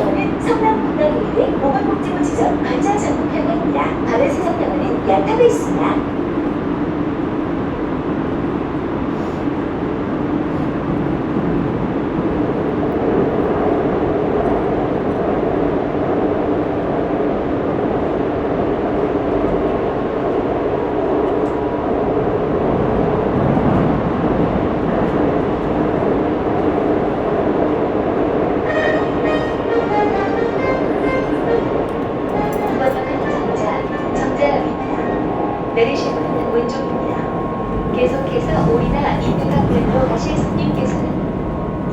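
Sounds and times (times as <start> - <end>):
subway train rumbling: 0.0 - 41.9.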